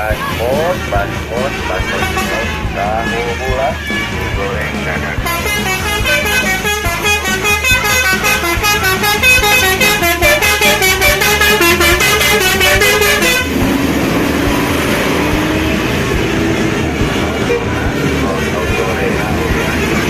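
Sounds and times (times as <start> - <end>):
steady low drone: 0.0 - 20.0
bus musical horn tune: 1.0 - 13.6.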